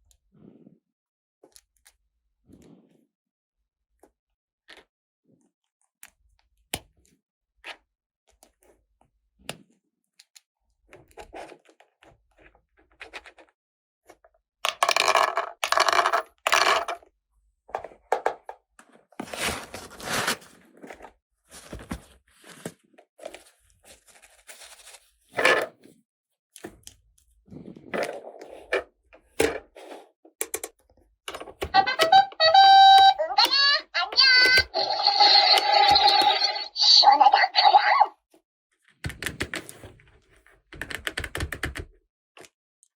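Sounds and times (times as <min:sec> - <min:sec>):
plastic toy parts clicking: 0:14.7 - 0:17.0
plastic crinkling and rustling: 0:19.2 - 0:20.6.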